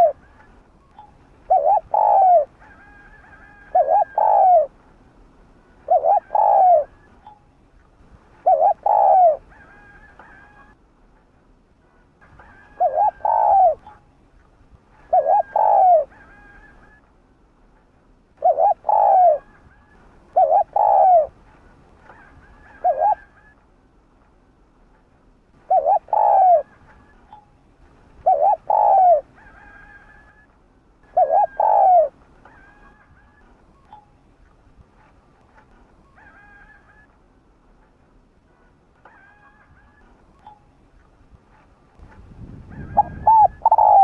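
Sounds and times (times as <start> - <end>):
dove cooing: 0.0 - 0.4, 1.5 - 4.8, 5.8 - 7.4, 8.4 - 10.8, 12.4 - 14.0, 15.0 - 17.0, 18.4 - 21.4, 22.0 - 23.6, 25.6 - 27.4, 28.2 - 33.5, 36.0 - 37.1, 42.6 - 44.0.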